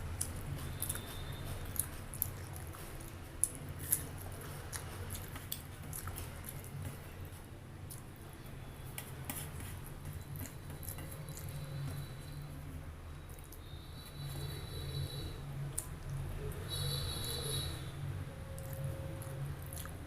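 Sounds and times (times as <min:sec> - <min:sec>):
person chewing food: 0:00.0 - 0:12.5, 0:15.6 - 0:16.7, 0:18.4 - 0:20.0.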